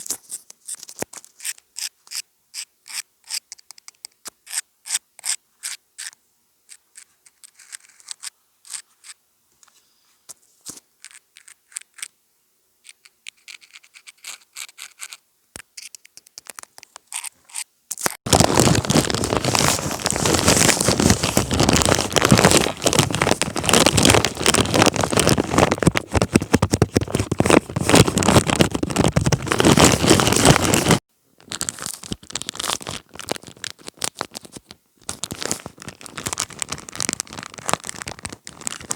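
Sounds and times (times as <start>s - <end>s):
scratching and scraping: 2.9s - 12.1s, 12.8s - 38.9s
loud crackling scrape: 17.1s - 31.0s.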